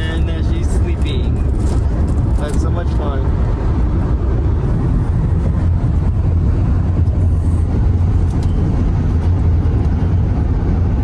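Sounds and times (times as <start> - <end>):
car road rumble: 0.0 - 11.0.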